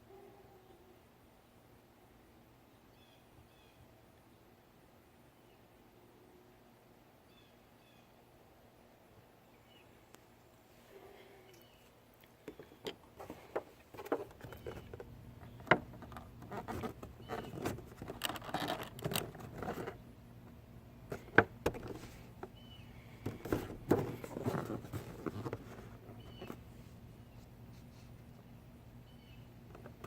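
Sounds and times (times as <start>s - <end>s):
packaging rustling: 15.9s - 20.0s, 23.3s - 26.6s.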